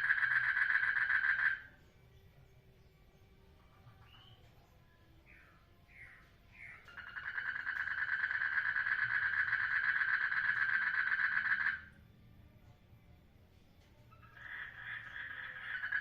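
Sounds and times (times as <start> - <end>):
frog trilling: 0.0 - 1.8, 5.4 - 12.0, 14.1 - 16.0.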